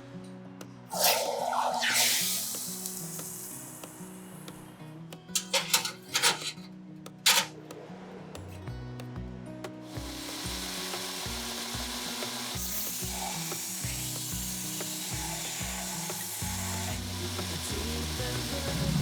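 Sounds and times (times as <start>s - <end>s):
steady hiss: 0.9s - 4.7s, 9.9s - 19.0s
background music with beat and bass: 13.8s - 19.0s.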